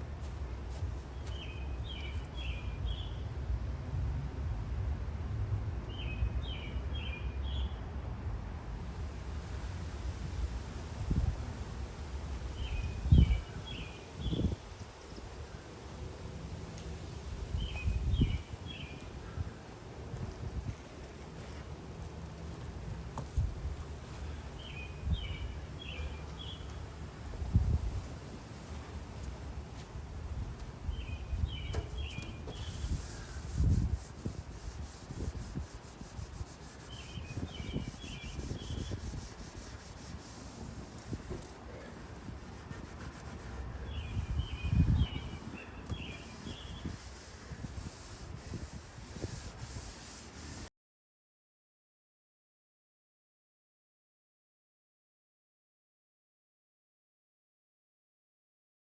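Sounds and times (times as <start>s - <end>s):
outdoor background noise: 0.0s - 50.7s.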